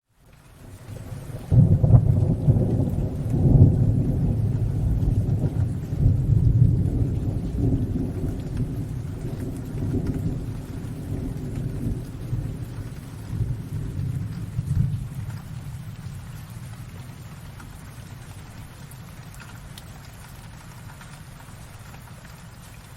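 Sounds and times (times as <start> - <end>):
steady rain: 0.0 - 22.9
rolling thunder: 1.0 - 17.5.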